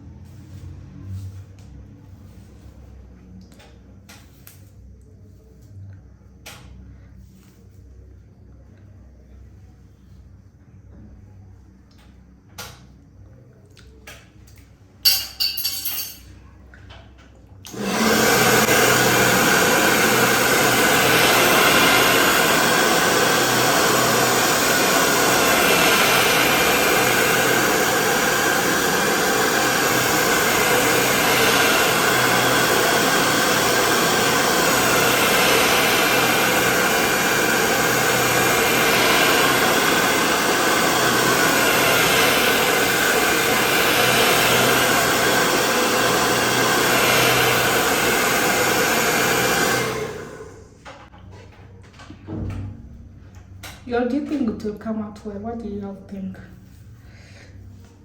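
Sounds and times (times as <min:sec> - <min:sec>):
hair dryer running: 0:17.7 - 0:50.7.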